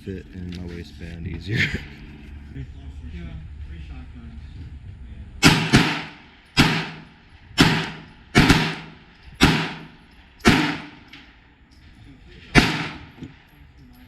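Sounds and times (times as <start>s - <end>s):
pistol shots echoing: 5.4s - 11.3s, 12.5s - 13.5s.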